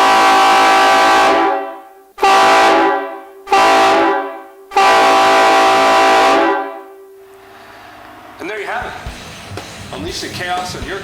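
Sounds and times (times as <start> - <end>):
train horn blasts: 0.0 - 7.5.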